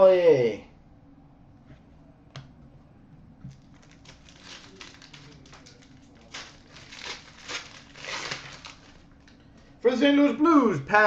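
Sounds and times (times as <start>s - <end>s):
cards rustling: 3.5s - 9.4s.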